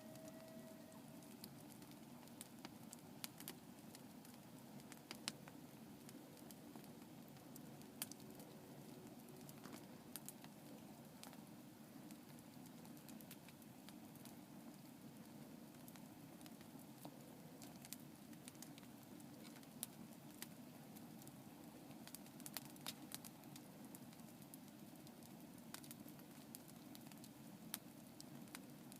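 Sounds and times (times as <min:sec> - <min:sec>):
campfire crackling: 0:00.0 - 0:28.9.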